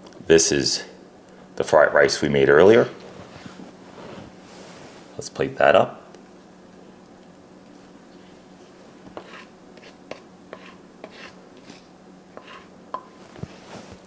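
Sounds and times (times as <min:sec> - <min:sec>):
spoon scraping rice onto plate: 0:09.1 - 0:13.1.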